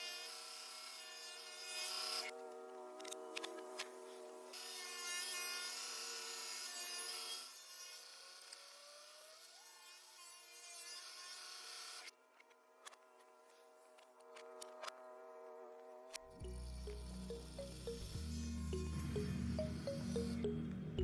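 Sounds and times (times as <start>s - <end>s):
reversed power tool cutting wood: 0.0s - 2.4s, 3.2s - 12.1s.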